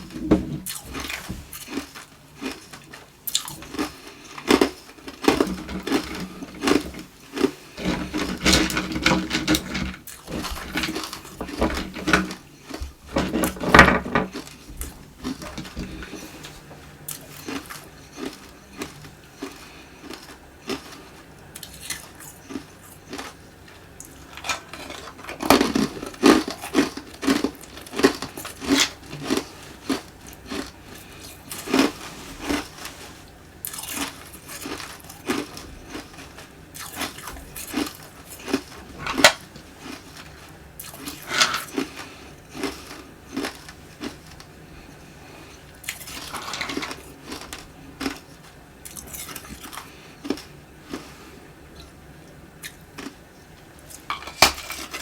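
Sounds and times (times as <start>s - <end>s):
ice being bitten and chewed: 0.0s - 12.9s, 33.6s - 44.5s.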